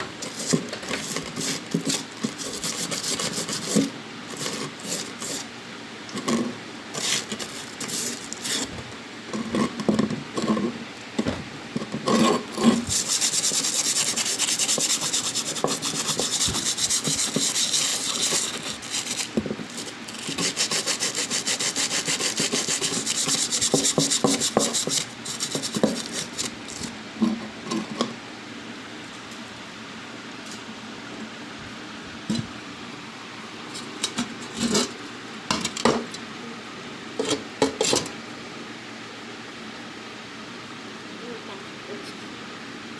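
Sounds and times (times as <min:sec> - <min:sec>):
handling knocks and scrapes: 0:00.0 - 0:05.5, 0:06.2 - 0:20.9, 0:22.1 - 0:28.2
hand tool rasping: 0:00.2 - 0:05.5, 0:12.1 - 0:26.9.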